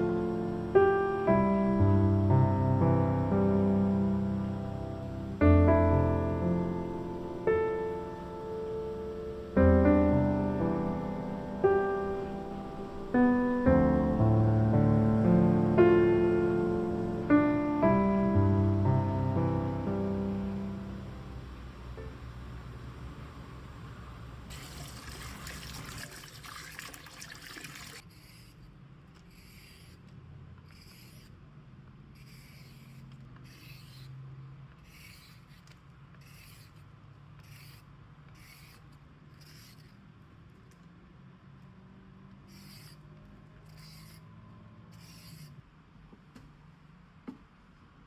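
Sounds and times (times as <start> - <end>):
water running from tap: 24.5 - 28.0.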